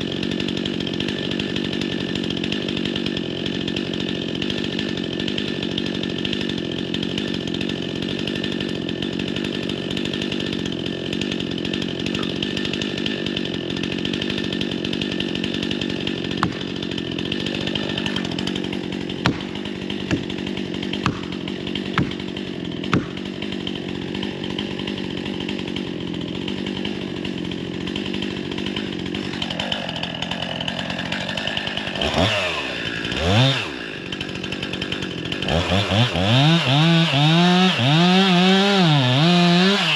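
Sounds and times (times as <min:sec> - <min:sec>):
chainsaw cutting tree: 0:00.0 - 0:39.9
wood snapping: 0:11.1 - 0:25.8.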